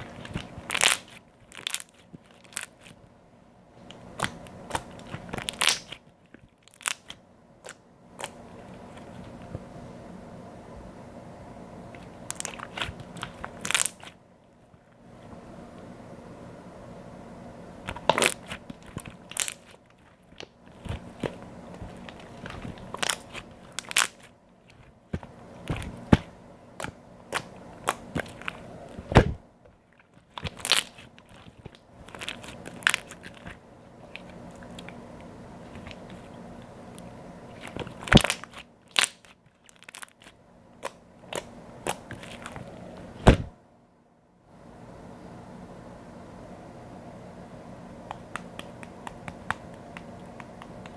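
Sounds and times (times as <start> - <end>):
slime popping and crackling: 0.0 - 3.0, 3.9 - 9.4, 12.0 - 14.2, 17.8 - 29.4, 30.0 - 35.0, 37.5 - 42.7.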